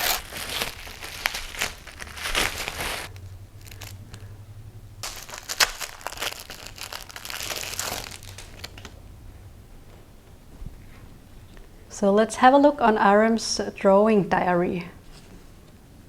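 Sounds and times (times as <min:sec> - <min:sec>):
packaging crinkling and tearing: 0:00.0 - 0:04.3, 0:05.0 - 0:09.0.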